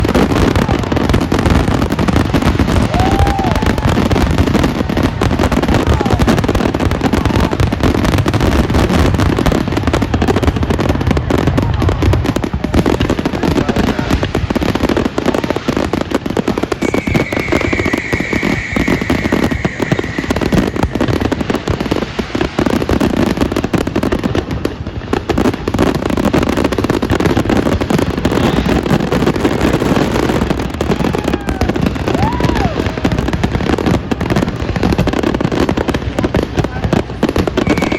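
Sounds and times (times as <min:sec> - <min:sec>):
fireworks crackling and banging: 0:00.0 - 0:37.9
high steady whistle: 0:16.8 - 0:21.7, 0:37.6 - 0:37.9.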